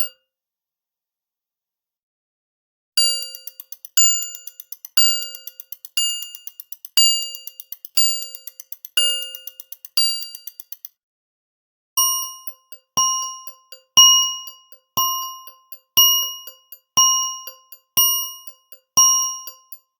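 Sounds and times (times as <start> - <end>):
timer bell dinging: 3.0 - 10.9, 12.0 - 19.9.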